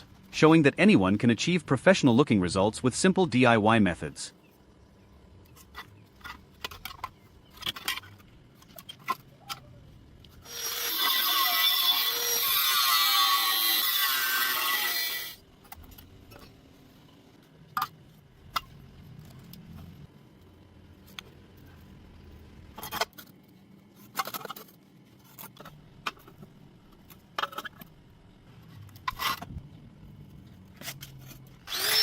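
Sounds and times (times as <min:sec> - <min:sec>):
power tool running on metal: 0:10.4 - 0:15.4, 0:31.6 - 0:32.0.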